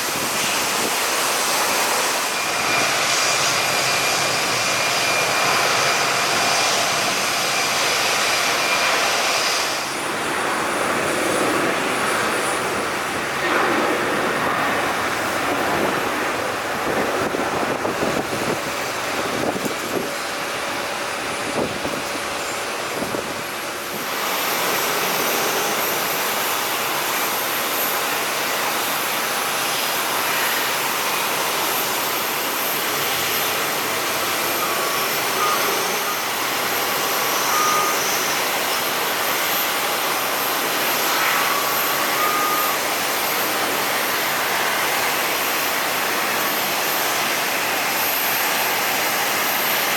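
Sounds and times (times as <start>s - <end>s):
jet engines rushing: 0.0s - 49.9s
reversing vehicle beeps: 34.6s - 36.3s, 37.2s - 38.4s, 41.4s - 42.8s.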